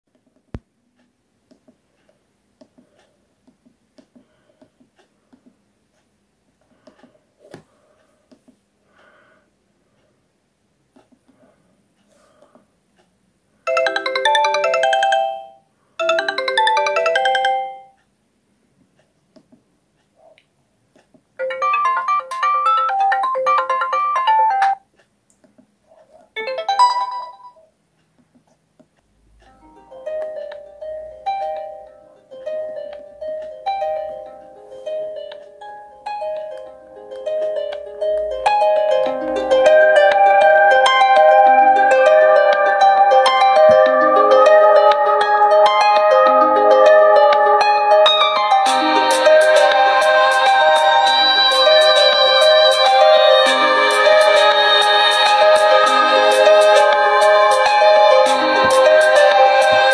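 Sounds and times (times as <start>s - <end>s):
mobile phone ringtone melody: 13.7s - 18.0s, 21.4s - 24.8s, 26.4s - 27.7s, 29.6s - 59.9s.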